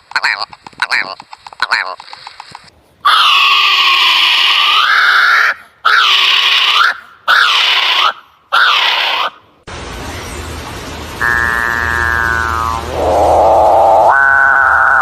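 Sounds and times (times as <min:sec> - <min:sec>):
bird giving harsh calls: 0:03.1 - 0:09.4, 0:11.2 - 0:15.0.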